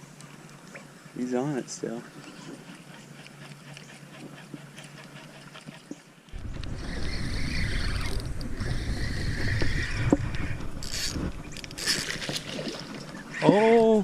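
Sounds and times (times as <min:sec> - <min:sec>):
low rumble: 0:06.4 - 0:12.5
fishing reel whirring: 0:06.4 - 0:12.8.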